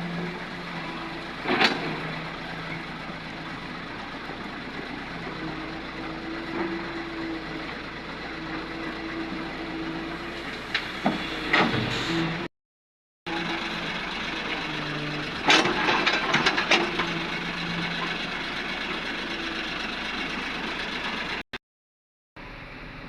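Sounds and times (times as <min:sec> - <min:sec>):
heavy earthmoving machinery running: 0:00.0 - 0:12.5, 0:13.3 - 0:21.4.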